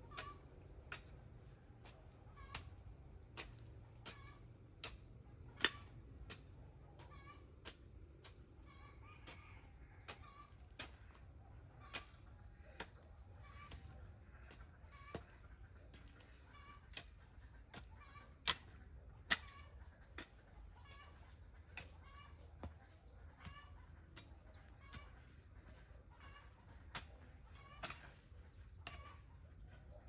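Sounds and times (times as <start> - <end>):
chickens clucking: 19.4 - 29.4.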